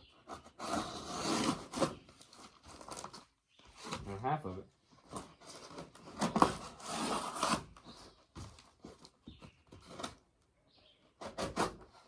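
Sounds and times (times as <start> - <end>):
cardboard box rustling and scraping: 0.3 - 4.2, 5.0 - 10.2.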